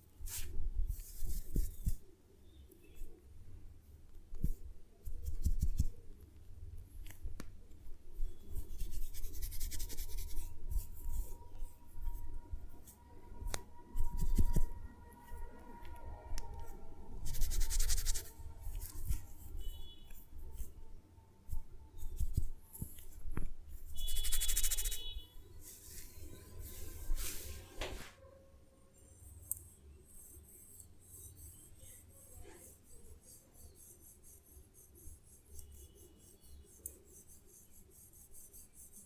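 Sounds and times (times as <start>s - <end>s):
hands rubbing and tapping skin: 0.3s - 2.0s, 4.3s - 5.9s, 8.7s - 11.3s, 13.5s - 14.7s, 17.3s - 19.3s, 21.5s - 23.5s, 24.2s - 25.0s
faint background music: 8.2s - 23.0s.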